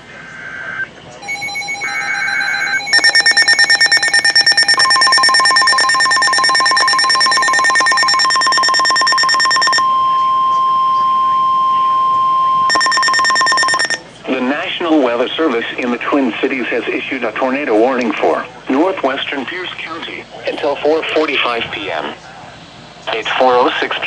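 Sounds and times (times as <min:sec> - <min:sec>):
rapid pulsing alarm beep: 0:01.2 - 0:14.0
steady weather alert tone: 0:01.2 - 0:14.0
buzzy digital data bursts: 0:01.3 - 0:09.8.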